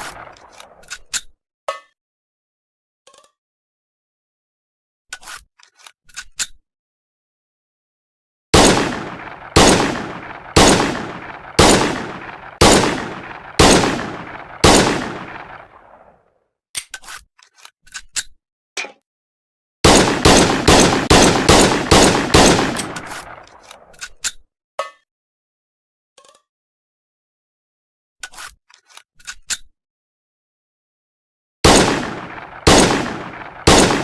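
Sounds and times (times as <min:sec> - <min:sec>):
pistol gunshots echoing: 0:08.6 - 0:16.0, 0:19.8 - 0:23.6, 0:31.6 - 0:34.0.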